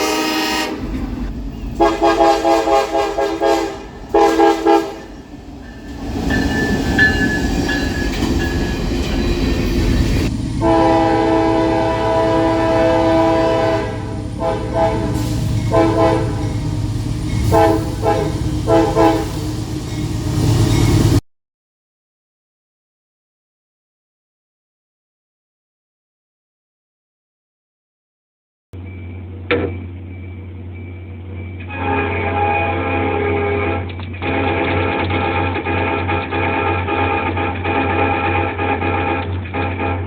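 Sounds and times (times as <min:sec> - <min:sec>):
locomotive air horn blasts: 0:00.0 - 0:01.0, 0:01.8 - 0:05.2, 0:10.6 - 0:16.7, 0:17.4 - 0:19.6, 0:31.7 - 0:40.0
train rumble and wheel clatter: 0:00.0 - 0:21.2, 0:28.8 - 0:40.0.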